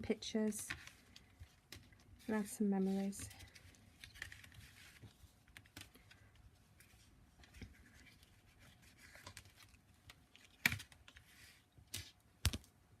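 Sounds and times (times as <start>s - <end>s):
paper rustling and scraping: 0.7s - 5.9s, 6.8s - 9.8s.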